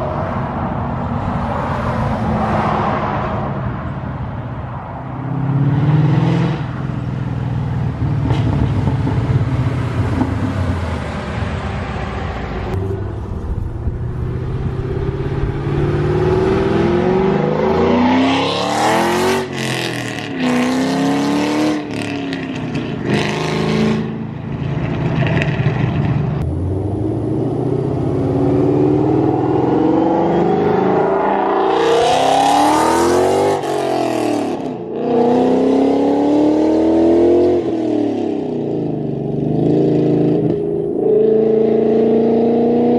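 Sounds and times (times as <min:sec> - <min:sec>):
car engine revving: 0:07.9 - 0:38.4.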